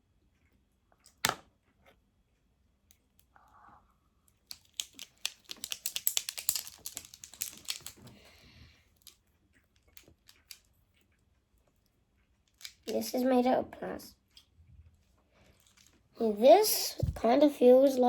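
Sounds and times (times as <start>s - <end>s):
rapid clicks and crinkles: 4.3s - 13.0s
plastic items clicking: 4.5s - 8.3s, 12.5s - 13.0s.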